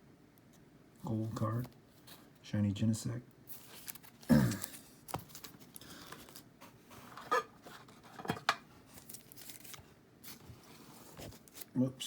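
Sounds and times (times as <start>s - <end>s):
plastic card sleeves rustling: 3.5s - 6.5s, 8.9s - 11.8s.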